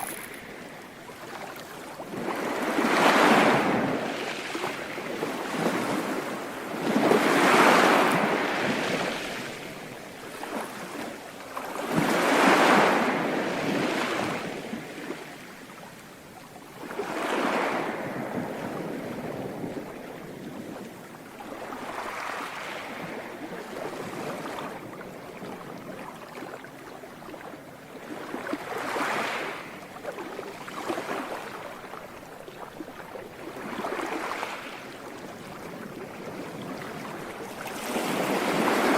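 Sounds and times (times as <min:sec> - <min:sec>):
sea waves breaking: 0:00.0 - 0:15.4, 0:28.0 - 0:38.9
surf washing: 0:00.0 - 0:15.5, 0:28.0 - 0:38.9.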